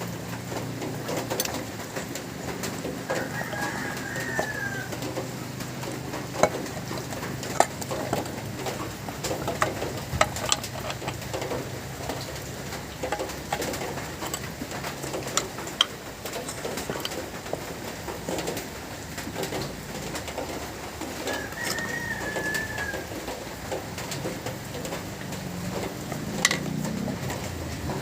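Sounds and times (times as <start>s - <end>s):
clicks and knocks of tools: 0.5s - 27.6s
bird calling: 21.2s - 23.6s.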